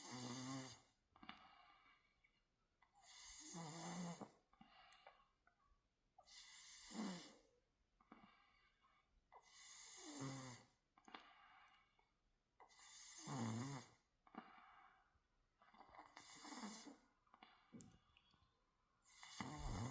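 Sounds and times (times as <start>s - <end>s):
person snoring: 0.0s - 0.9s, 3.0s - 4.3s, 6.3s - 7.4s, 12.8s - 14.0s, 15.9s - 17.0s, 19.1s - 19.9s.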